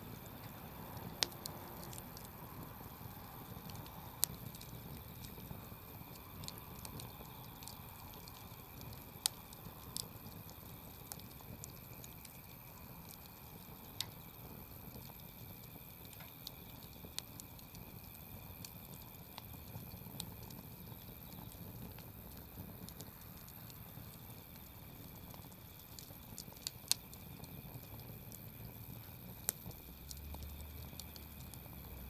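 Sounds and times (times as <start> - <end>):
campfire crackling: 0.0 - 32.0
fire pops and snaps: 0.0 - 32.0
low rush of flame: 0.0 - 32.0.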